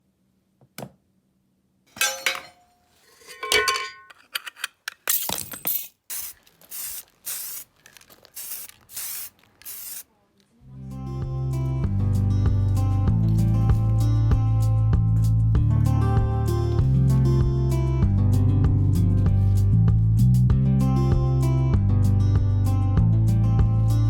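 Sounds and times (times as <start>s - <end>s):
short hissing sprays: 6.1s - 10.1s.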